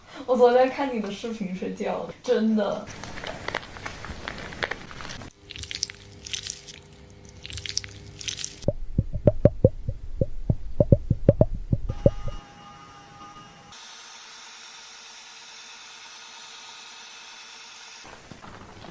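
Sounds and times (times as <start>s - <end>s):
fingers scrubbing lathered hair: 3.8s - 8.7s.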